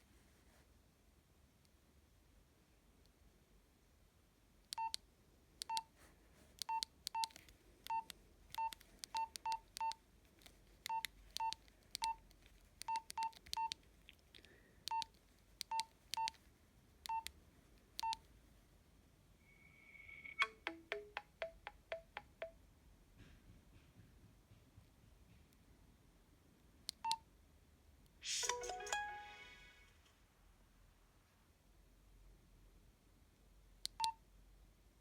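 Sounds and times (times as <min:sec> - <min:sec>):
phone keypad beeps: 0:04.8 - 0:05.0, 0:05.6 - 0:05.9, 0:06.6 - 0:10.0, 0:10.9 - 0:12.2, 0:12.8 - 0:13.8, 0:14.9 - 0:16.4, 0:17.1 - 0:17.3, 0:18.0 - 0:18.2, 0:20.0 - 0:22.6, 0:34.0 - 0:34.2.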